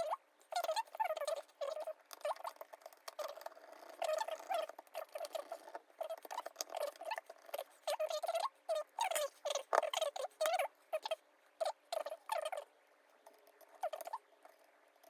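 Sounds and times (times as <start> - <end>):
high-pitched chattering squeaks: 0.0 - 2.6, 4.0 - 12.6.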